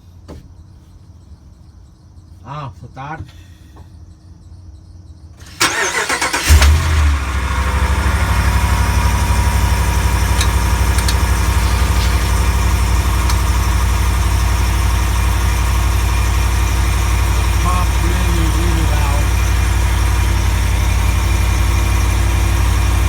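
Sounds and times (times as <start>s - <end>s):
pickup engine starting and idling: 5.4s - 23.0s
starter motor cranking: 5.4s - 23.0s
driveshaft clunk: 8.5s - 15.7s.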